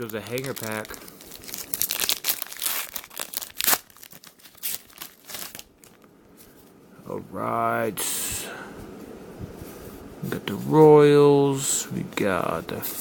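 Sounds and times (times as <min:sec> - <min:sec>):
wrapper crinkling and tearing: 0:00.0 - 0:06.1.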